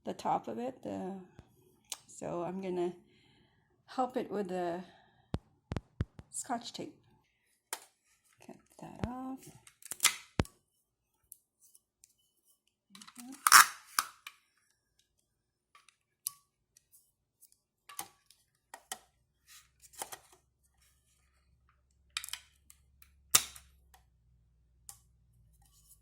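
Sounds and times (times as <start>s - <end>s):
tape clicks and scissor snips: 13.3s - 14.2s, 23.3s - 23.7s.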